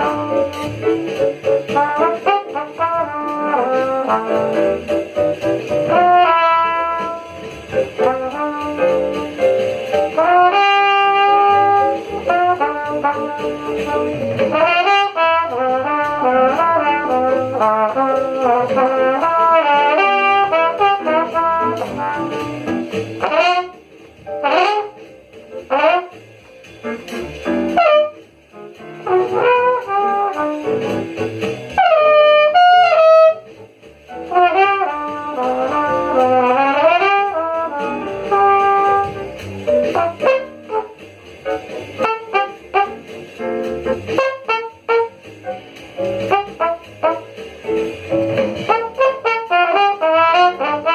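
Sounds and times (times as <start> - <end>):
brass ensemble playing jazz: 0.0 - 50.9.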